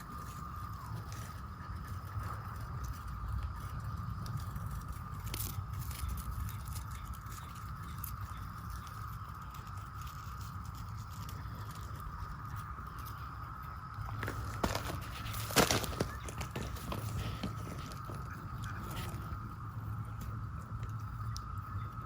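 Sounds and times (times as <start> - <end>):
cicadas buzzing chorus: 0.0 - 22.0
low rumble: 0.0 - 22.0
faint ticks: 20.1 - 22.0.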